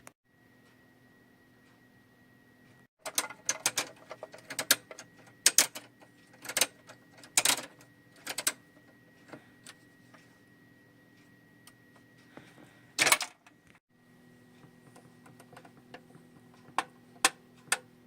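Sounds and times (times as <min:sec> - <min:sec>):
toy parts clicking: 0:03.0 - 0:08.6.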